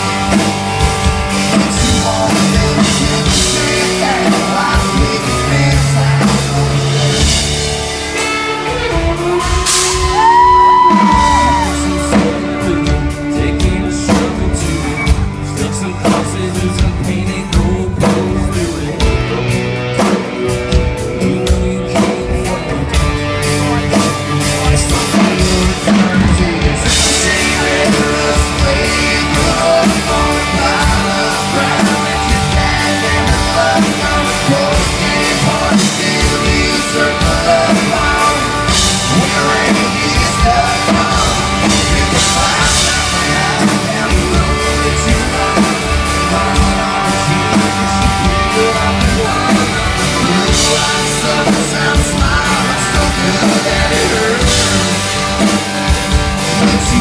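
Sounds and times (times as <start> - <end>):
country-rock band playing: 0.0 - 57.0
drums: 0.0 - 57.0
lead singing voice: 0.0 - 57.0.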